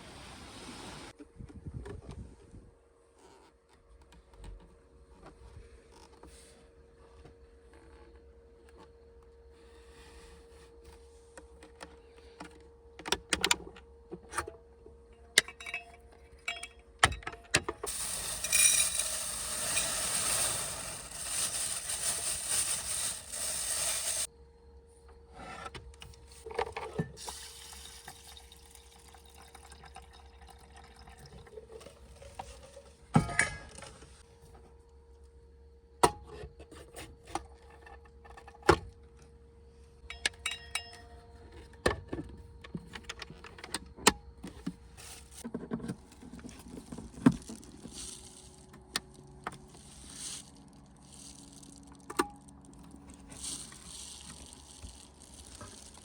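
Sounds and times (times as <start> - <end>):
water pouring: 17.9 - 24.3, 27.3 - 31.8, 52.8 - 56.0.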